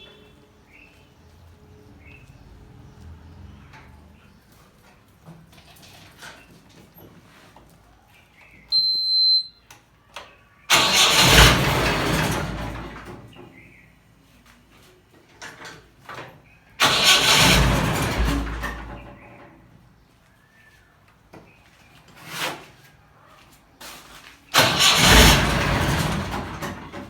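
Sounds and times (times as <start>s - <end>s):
short high electronic beep: 8.8s - 9.6s
engine starting and stalling: 10.7s - 13.8s, 16.7s - 19.7s, 24.5s - 27.0s.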